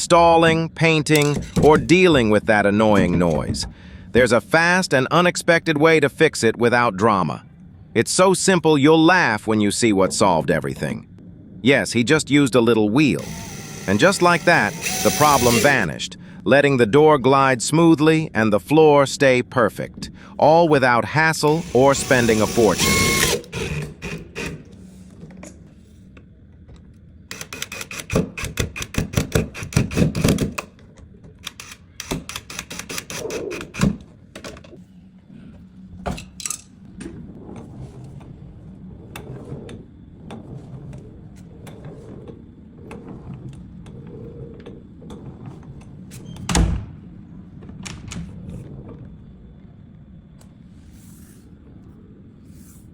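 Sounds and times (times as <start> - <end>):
door shutting thunk: 46.4 - 47.0.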